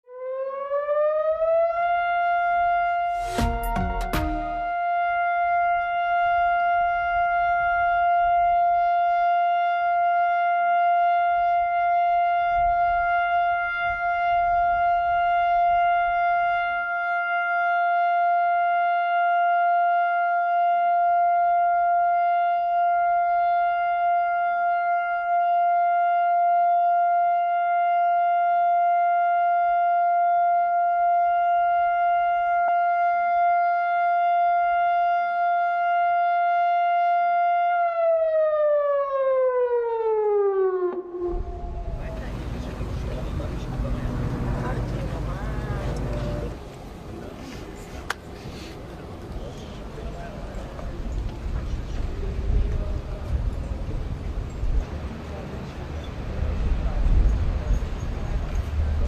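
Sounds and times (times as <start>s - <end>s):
siren steady tone: 0.0s - 46.8s.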